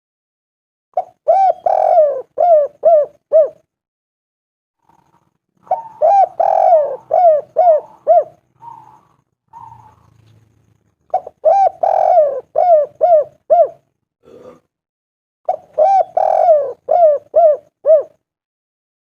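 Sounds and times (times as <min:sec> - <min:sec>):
dove cooing: 0:01.0 - 0:03.7, 0:04.8 - 0:10.4, 0:11.1 - 0:13.9, 0:15.5 - 0:18.2.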